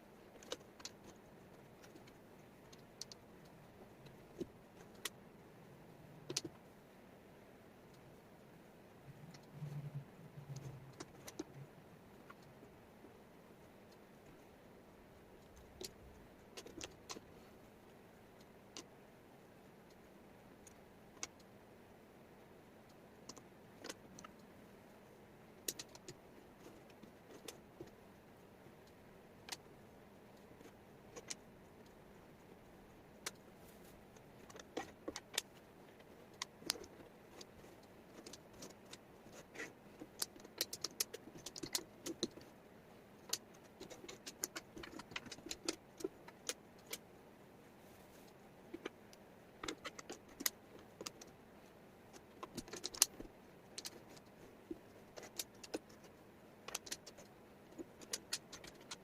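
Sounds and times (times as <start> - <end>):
low steady hiss: 0.0 - 59.0
wooden puzzle pieces clicking: 38.1 - 42.5, 52.1 - 59.0.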